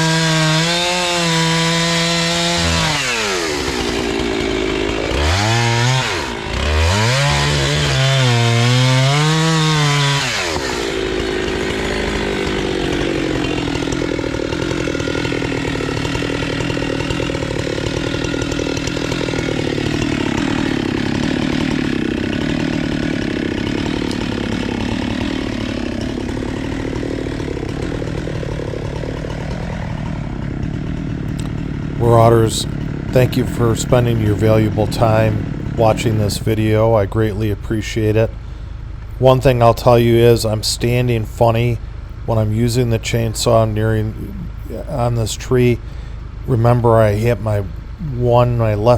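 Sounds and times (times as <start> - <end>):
chainsaw cutting wood: 0.0 - 48.9.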